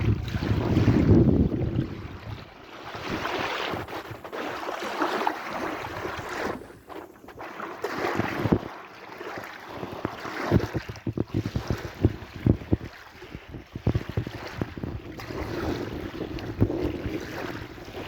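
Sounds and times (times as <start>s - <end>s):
wind buffeting microphone: 0.0s - 4.4s, 9.8s - 18.0s
sea waves washing in: 0.0s - 18.0s.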